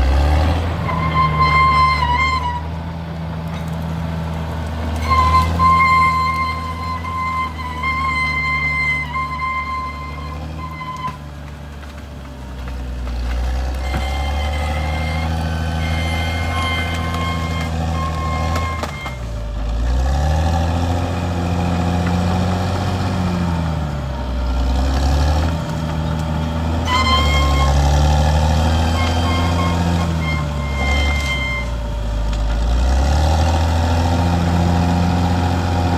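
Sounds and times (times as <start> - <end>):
bulldozer diesel engine revving: 0.0 - 35.9
reverse alarm tone: 28.7 - 31.9.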